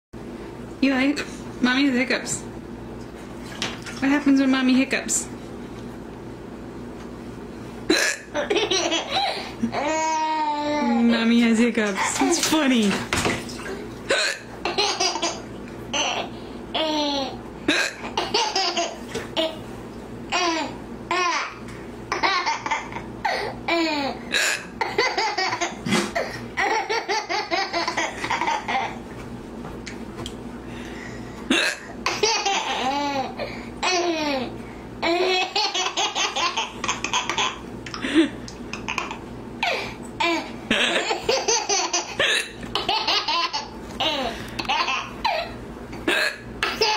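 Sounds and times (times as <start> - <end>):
woman hiccuping: 7.9 - 8.3, 14.1 - 14.5, 31.5 - 31.9, 46.1 - 46.5
baby giggling: 24.8 - 29.0, 32.0 - 38.0, 38.7 - 45.6, 46.6 - 46.9.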